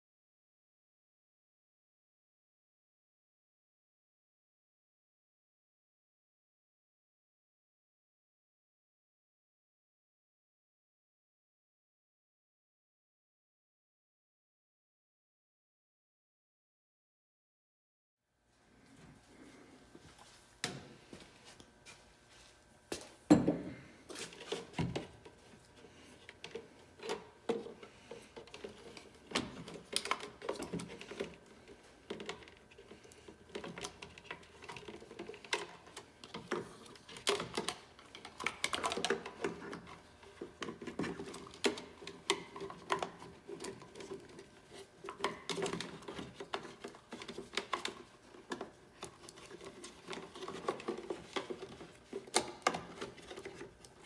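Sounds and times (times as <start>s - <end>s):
metal parts and hand tools clicking: 26.2s - 54.0s.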